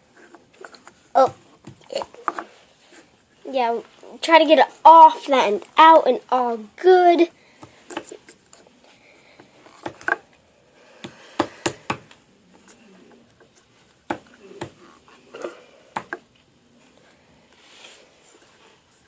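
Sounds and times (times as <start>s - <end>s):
hands tapping modelling dough: 11.0s - 12.8s, 13.4s - 14.9s, 15.9s - 16.3s.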